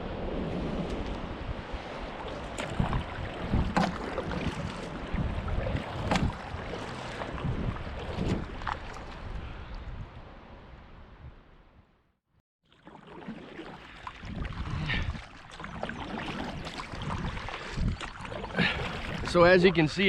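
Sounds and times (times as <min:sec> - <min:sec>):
moving water: 0:00.0 - 0:09.9, 0:12.6 - 0:20.0
wind: 0:00.0 - 0:20.0
paddle splashing water: 0:01.0 - 0:09.4, 0:12.6 - 0:20.0.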